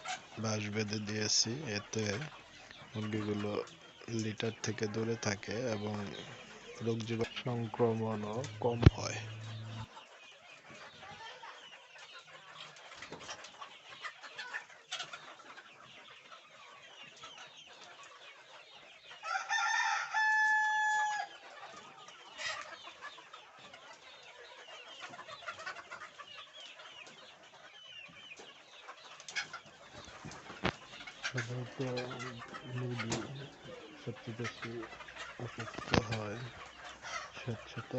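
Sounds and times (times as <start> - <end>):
chickens clucking: 0.0 - 37.9
rooster crowing: 19.2 - 21.3.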